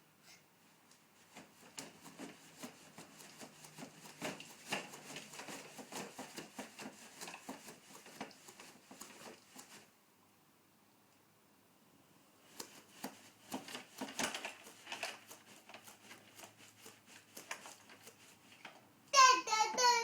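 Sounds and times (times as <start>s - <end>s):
rapid small clicks and taps: 0.9s - 9.9s, 12.5s - 18.9s.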